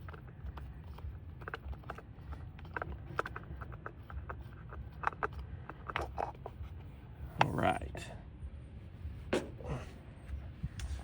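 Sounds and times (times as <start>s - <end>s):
small clicks taps and scrapes: 0.0s - 7.5s.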